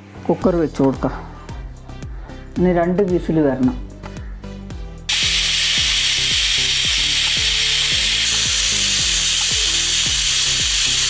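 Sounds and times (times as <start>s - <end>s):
pressure cooker steam hissing: 5.1s - 11.0s.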